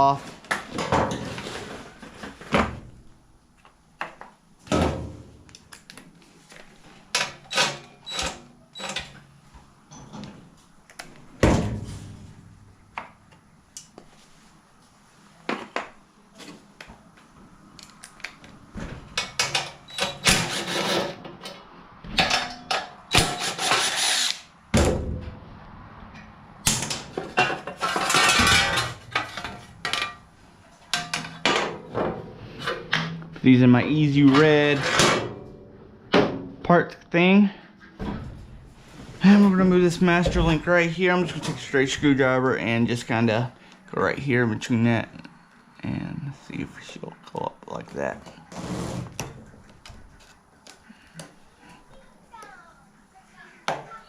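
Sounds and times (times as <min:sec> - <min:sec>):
rasping tool noise: 0:19.9 - 0:21.2, 0:23.1 - 0:24.5.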